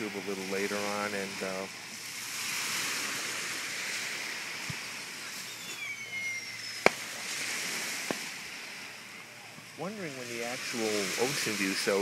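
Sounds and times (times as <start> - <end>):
surf hissing: 0.0 - 12.0
high falling whistle: 5.2 - 7.5
faint pop: 6.8 - 7.0
firework bang: 6.8 - 8.4.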